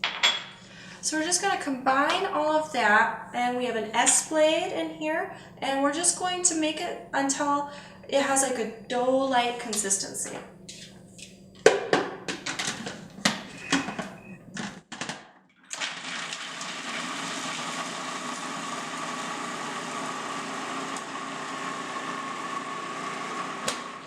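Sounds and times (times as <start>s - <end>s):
food processor chopping: 15.7s - 24.0s.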